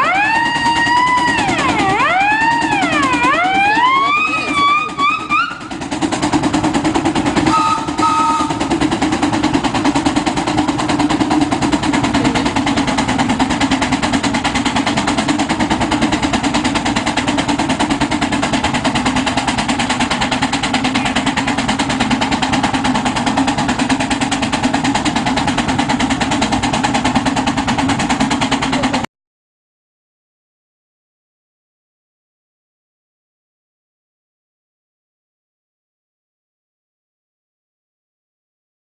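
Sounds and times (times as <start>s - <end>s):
steam traction engine exhaust beat: 0.0s - 29.1s
two-note tone: 7.5s - 8.7s.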